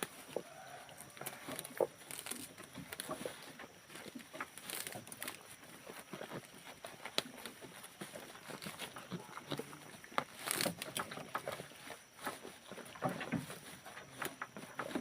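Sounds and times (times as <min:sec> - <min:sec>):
rustling: 0:00.0 - 0:15.0.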